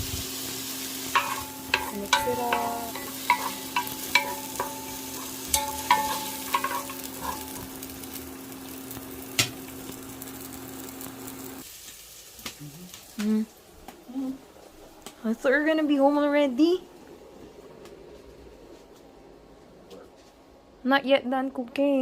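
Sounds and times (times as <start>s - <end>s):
onion and garlic sizzling in oil: 0.0s - 17.6s
utensil clinking on pan: 1.1s - 7.7s.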